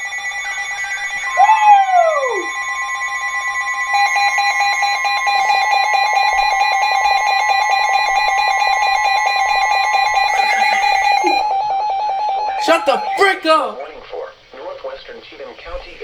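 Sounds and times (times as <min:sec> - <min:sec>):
two-tone alarm with flutter: 0:00.0 - 0:12.5.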